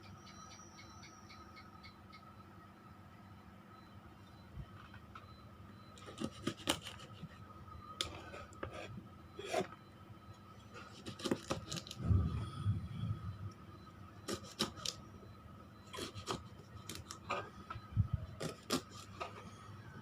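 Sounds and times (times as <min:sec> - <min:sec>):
low thud: 0:12.0 - 0:13.4.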